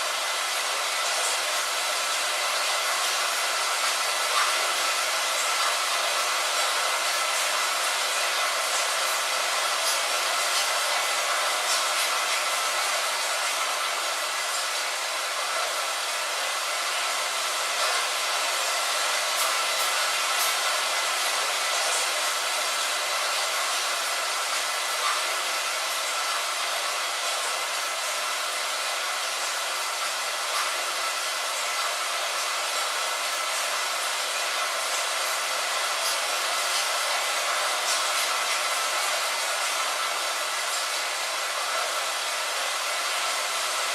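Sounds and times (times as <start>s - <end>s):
steady rain hiss: 0.0s - 43.9s.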